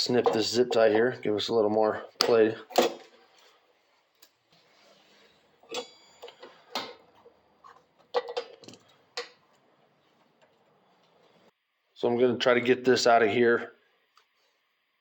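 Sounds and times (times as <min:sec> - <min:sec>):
hand tools clicking and clinking: 0:05.6 - 0:09.4.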